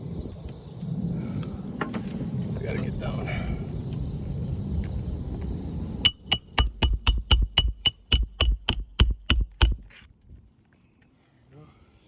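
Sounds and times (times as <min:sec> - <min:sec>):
metallic clanks on ladder: 0:06.1 - 0:10.0.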